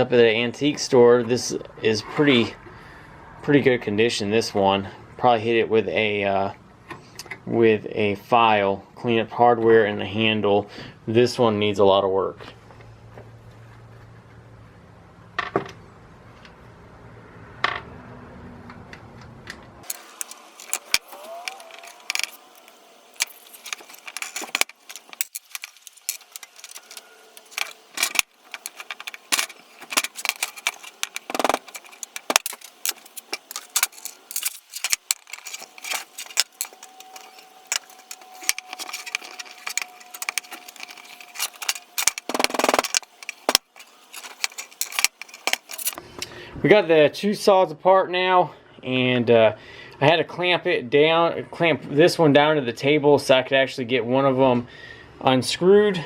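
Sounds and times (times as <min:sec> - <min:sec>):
small metal parts clinking: 0:19.8 - 0:46.0.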